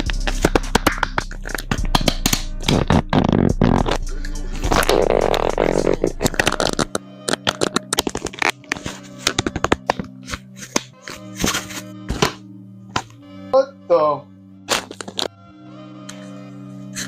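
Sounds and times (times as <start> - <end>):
background music: 0.0 - 17.0
packaging crackling and rustling: 6.2 - 10.1.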